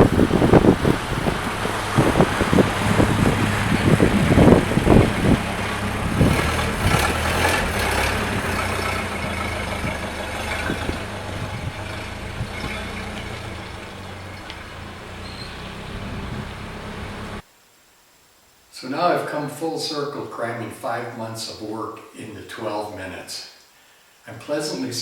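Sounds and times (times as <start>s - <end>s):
car engine running: 0.0s - 17.4s
engine knocks: 0.0s - 17.4s.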